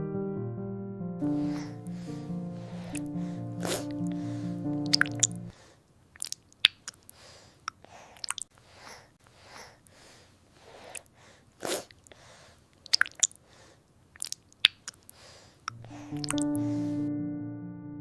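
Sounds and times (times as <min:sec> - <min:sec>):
baby breathing: 0:01.2 - 0:04.7, 0:07.2 - 0:12.6, 0:15.1 - 0:17.0
baby mouth clicks and smacks: 0:06.2 - 0:08.5, 0:14.2 - 0:16.4.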